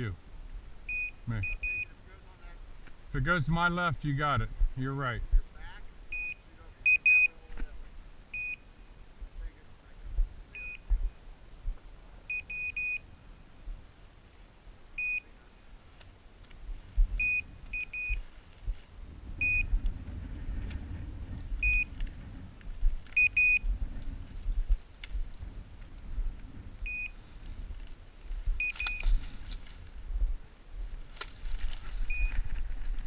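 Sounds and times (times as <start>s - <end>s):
high electronic beeps: 0.9s - 1.9s, 6.1s - 7.4s, 10.5s - 10.9s, 12.3s - 13.0s, 17.2s - 18.2s, 21.6s - 21.9s, 23.2s - 23.6s, 28.6s - 29.1s, 32.1s - 32.4s
low rumbling and thumping: 9.2s - 11.9s, 16.7s - 33.0s.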